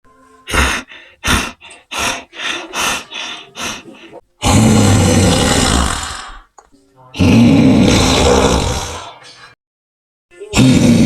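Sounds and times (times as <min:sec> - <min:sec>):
person imitating dinosaur calls: 0:00.5 - 0:06.5, 0:07.1 - 0:09.1, 0:10.4 - 0:11.0.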